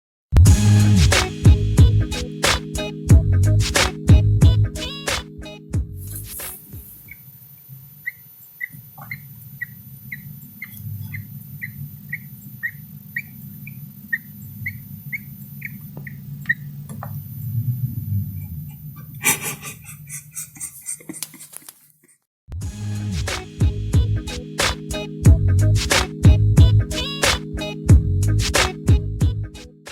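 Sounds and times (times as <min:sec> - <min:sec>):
brief rustling: 0:21.1 - 0:22.2.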